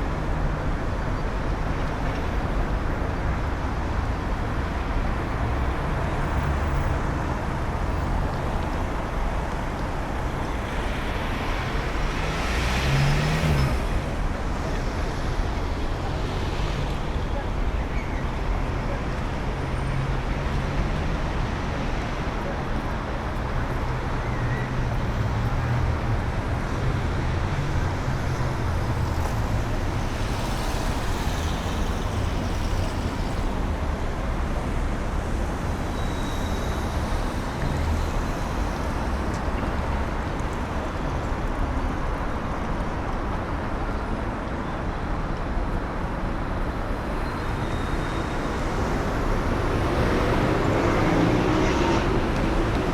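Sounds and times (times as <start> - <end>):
road traffic rumble: 0.0 - 52.9.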